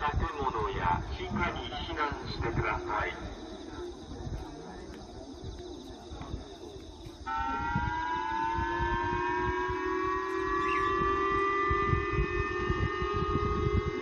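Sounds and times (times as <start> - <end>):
warning siren rising in pitch: 7.2 - 14.0.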